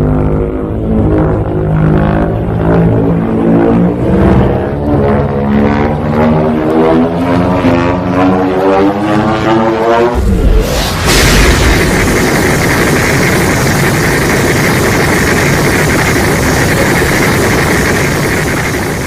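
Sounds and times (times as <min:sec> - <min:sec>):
droning hum rising in pitch: 0:00.0 - 0:19.0
noisy blast: 0:10.1 - 0:19.0.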